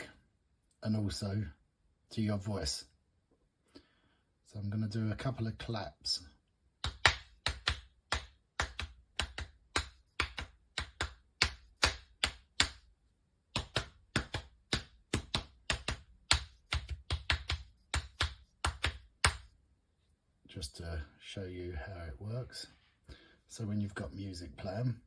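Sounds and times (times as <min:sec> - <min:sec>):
hand claps: 0:06.8 - 0:12.9, 0:13.5 - 0:19.5, 0:23.8 - 0:24.2.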